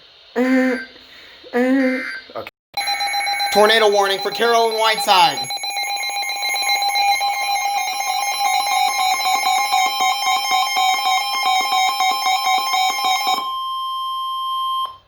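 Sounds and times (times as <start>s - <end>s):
two-tone alert alarm: 2.8s - 15.0s.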